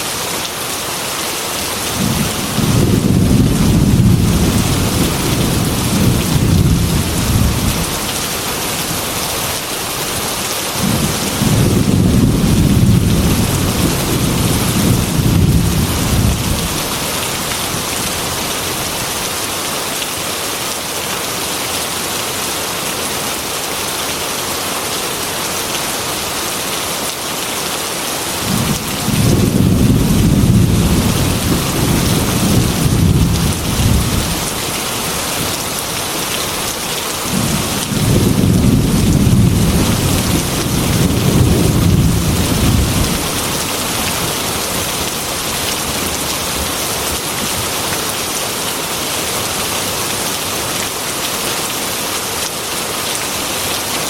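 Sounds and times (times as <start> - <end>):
heavy rain on a window: 0.0 - 54.0
rolling thunder: 1.9 - 8.1, 10.8 - 17.5, 28.4 - 34.5, 37.3 - 43.7.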